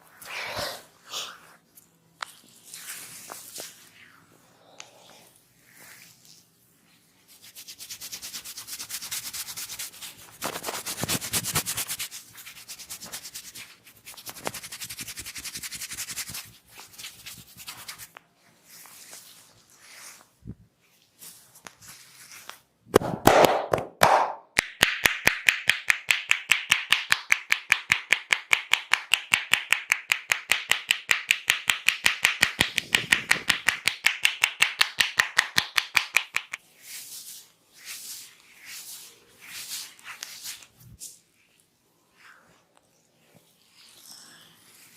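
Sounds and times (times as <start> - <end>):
hands rubbing hair and scalp: 0.2 - 4.2, 5.1 - 22.7, 25.3 - 41.6
percussive hand taps and slaps: 22.9 - 36.6.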